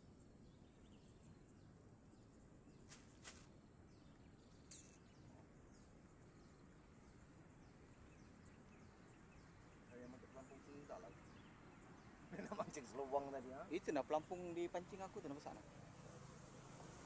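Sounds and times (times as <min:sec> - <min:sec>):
insects droning: 0:00.0 - 0:17.0.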